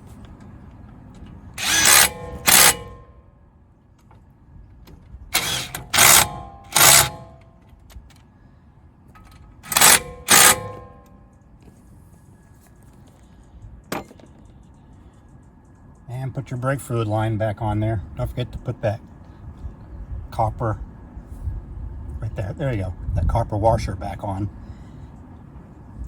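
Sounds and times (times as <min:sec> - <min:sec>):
impact wrench bursts: 0:01.6 - 0:03.2, 0:05.3 - 0:07.5, 0:09.6 - 0:11.1.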